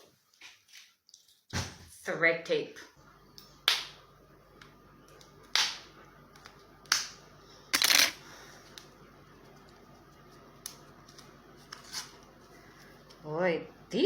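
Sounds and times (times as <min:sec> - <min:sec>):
tape ripping with crackle: 0:11.1 - 0:12.2.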